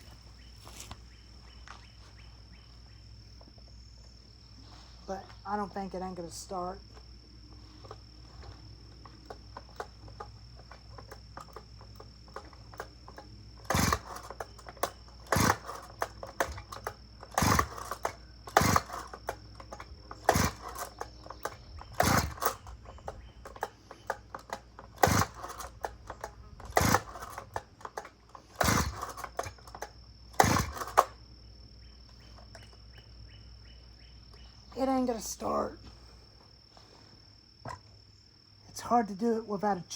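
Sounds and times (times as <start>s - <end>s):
chainsaw starter rope rasping: 7.7s - 31.2s.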